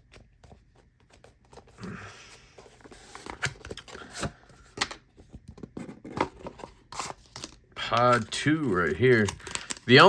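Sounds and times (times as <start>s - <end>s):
packaging rustling: 6.1s - 10.0s.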